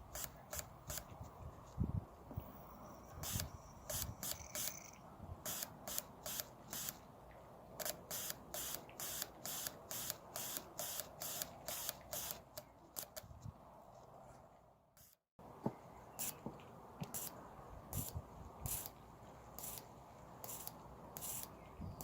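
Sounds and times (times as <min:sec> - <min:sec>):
fuel injector hissing spurts: 0:05.5 - 0:07.0, 0:07.8 - 0:13.2, 0:19.6 - 0:21.5.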